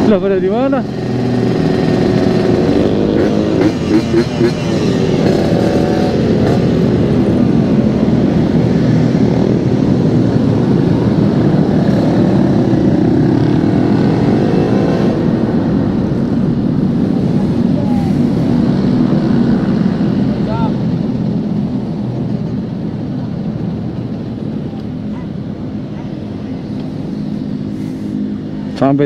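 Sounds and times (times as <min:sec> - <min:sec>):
two-stroke motorcycle engine revving: 0:00.0 - 0:21.0.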